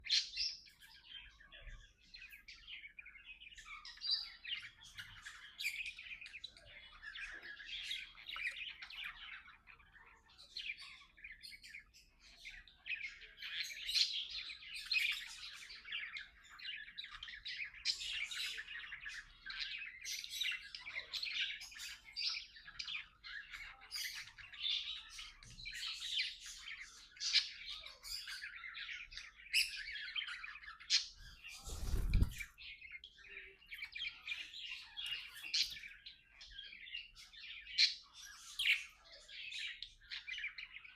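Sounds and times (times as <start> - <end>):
budgerigars chattering and warbling: 0.0 - 40.9
sharp bird chirps: 27.3 - 36.4.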